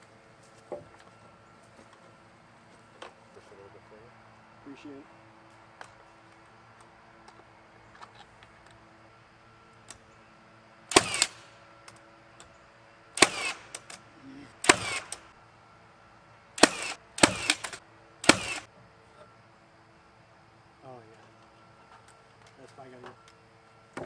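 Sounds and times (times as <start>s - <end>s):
nail gun firing: 10.9s - 11.5s, 13.2s - 14.0s, 14.6s - 15.3s, 16.6s - 18.7s.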